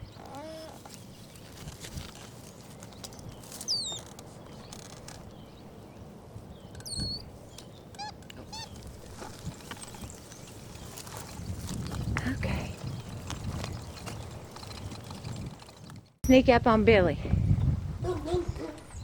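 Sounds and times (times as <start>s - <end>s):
faint outdoor background: 0.0s - 19.0s
monkey calls and chirps: 3.6s - 4.1s, 6.8s - 7.3s, 7.9s - 8.9s.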